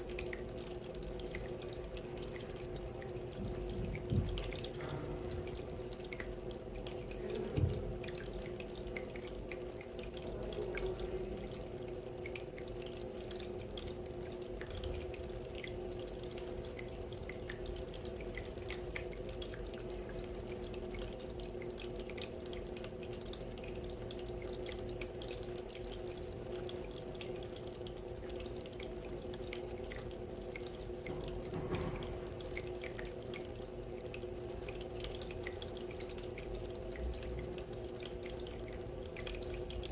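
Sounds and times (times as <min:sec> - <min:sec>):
water fountain trickling: 0:00.0 - 0:39.9
thump: 0:31.1 - 0:32.3.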